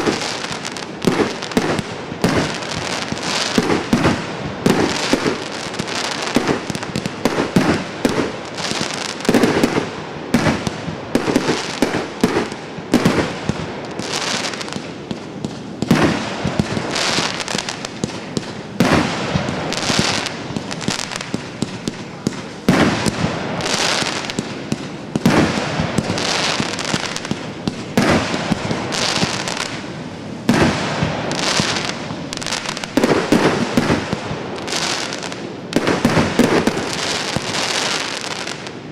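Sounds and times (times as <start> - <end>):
firework crackling: 0.0 - 38.9
firework cake bangs: 14.7 - 29.8, 30.4 - 35.2.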